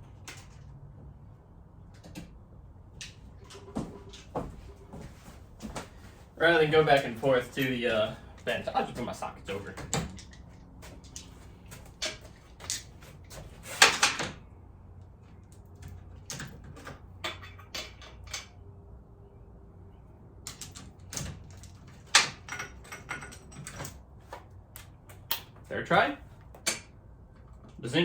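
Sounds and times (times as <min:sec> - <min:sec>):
tools clinking against metal: 0:17.2 - 0:18.6, 0:20.5 - 0:24.0.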